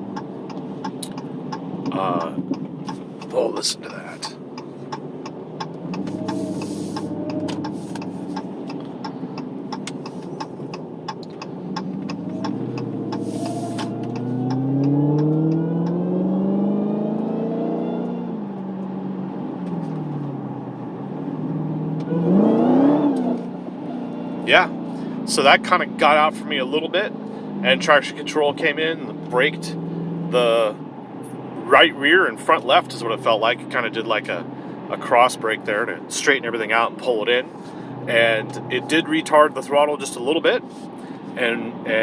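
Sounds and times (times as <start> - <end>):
car engine accelerating: 0.0 - 31.7, 36.4 - 42.0
high supercharger whine: 0.0 - 31.7.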